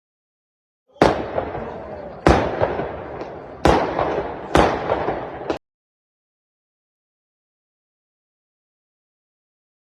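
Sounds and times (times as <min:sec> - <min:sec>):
fireworks booming: 0:00.9 - 0:05.6.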